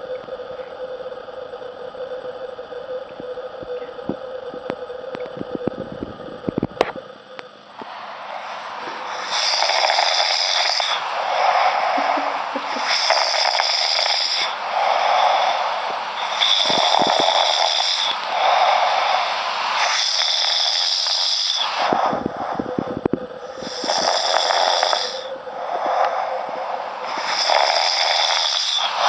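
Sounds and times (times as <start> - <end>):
person snoring loudly: 8.3 - 29.0.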